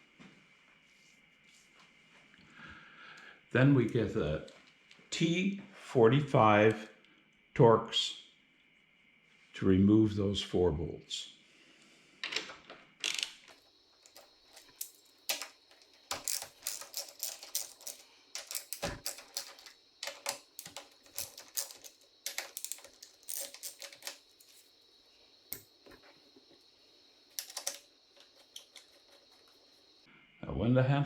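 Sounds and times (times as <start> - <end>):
ratchet clicking: 14.0 - 24.6.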